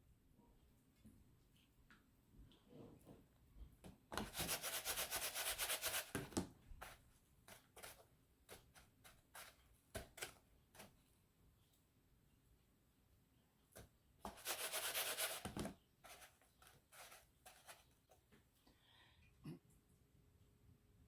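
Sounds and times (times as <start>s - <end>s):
short pats and scrapes: 4.1s - 11.0s, 13.8s - 18.3s
quick scratchy strokes: 4.3s - 6.1s, 14.3s - 15.5s.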